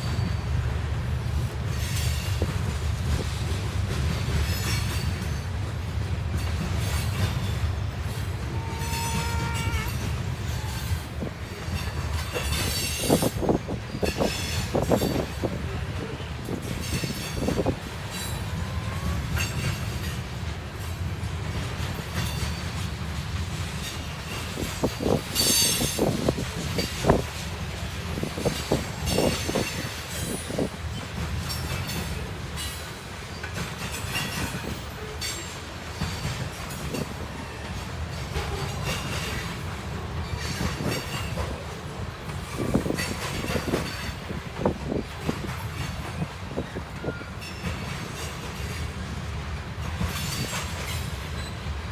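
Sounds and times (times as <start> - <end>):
freight cars rumbling: 0.0 - 51.9
wheels clacking over rail joints: 0.0 - 51.9
high wheel squeal: 8.4 - 11.2.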